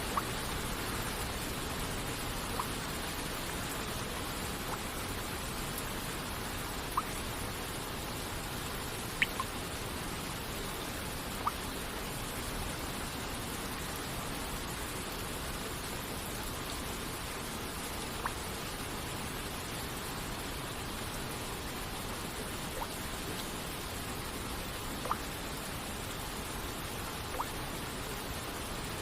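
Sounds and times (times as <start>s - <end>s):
water droplets plinking: 9.2s - 9.5s, 11.4s - 11.6s, 27.3s - 27.6s.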